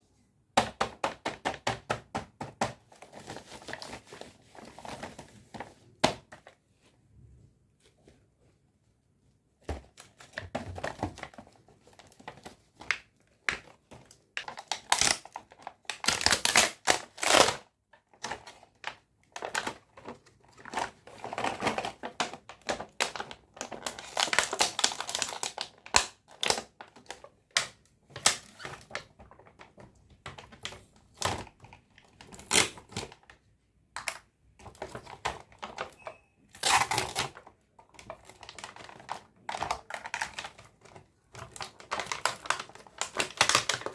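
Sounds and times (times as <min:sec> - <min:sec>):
packaging crinkling: 0:34.6 - 0:43.9.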